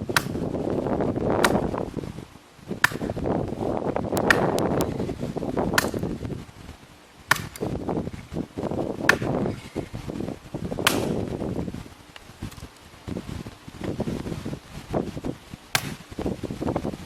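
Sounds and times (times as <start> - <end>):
hammer blows on stake: 0.0 - 0.6, 1.4 - 1.7, 2.8 - 3.2, 4.2 - 4.9, 5.7 - 6.1, 7.3 - 7.7, 9.0 - 9.5, 10.8 - 11.3, 15.7 - 16.1.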